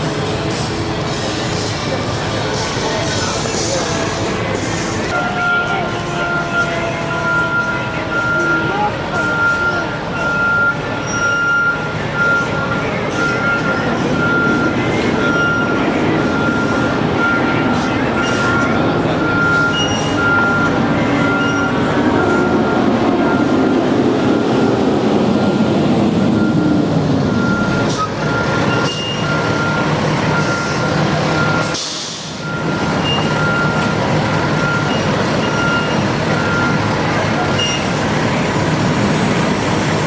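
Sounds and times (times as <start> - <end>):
truck engine rumble: 0.0 - 40.0
truck reversing alarm beeping: 0.0 - 40.0
air brake hiss: 31.6 - 32.4.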